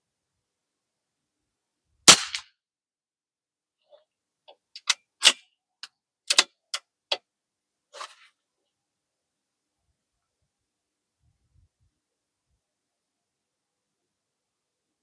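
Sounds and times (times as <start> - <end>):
rifle bolt clicking: 6.3 - 6.5.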